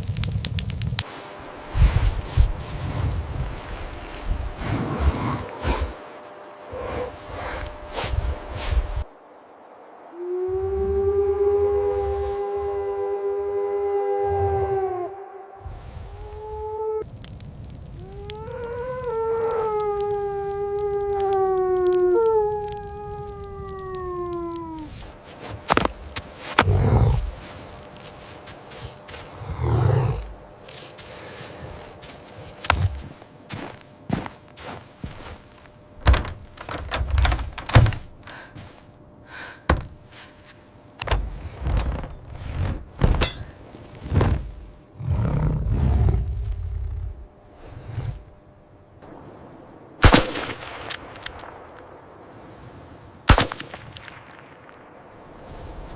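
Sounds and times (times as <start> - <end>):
wolf howling: 10.1 - 17.1, 17.9 - 25.2, 29.3 - 30.4.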